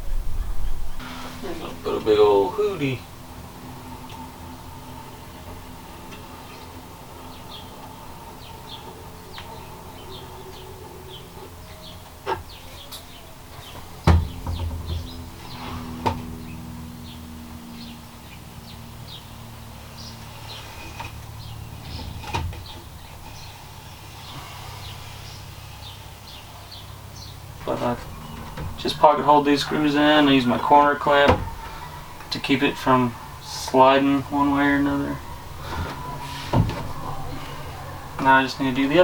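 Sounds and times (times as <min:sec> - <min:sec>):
birds chirping: 0:00.0 - 0:39.0
steady low hum: 0:00.0 - 0:39.0
wooden clatter: 0:13.6 - 0:16.4.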